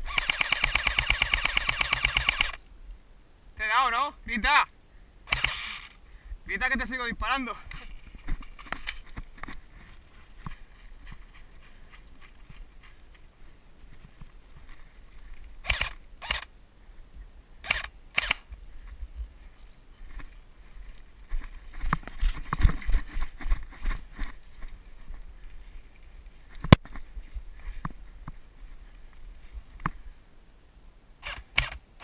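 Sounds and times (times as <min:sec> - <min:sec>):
airsoft gun shots: 0:00.0 - 0:02.6, 0:05.3 - 0:05.8, 0:31.2 - 0:31.8.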